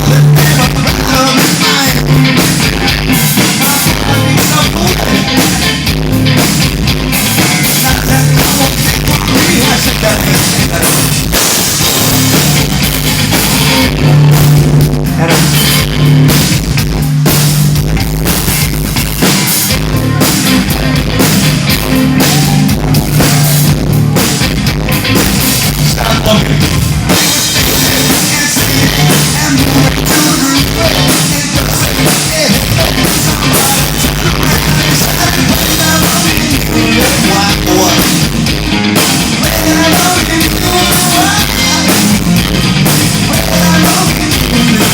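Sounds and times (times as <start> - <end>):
bass notes: 0.0 - 44.9
dense guitar: 0.0 - 44.9
drum kit beat: 0.0 - 44.9.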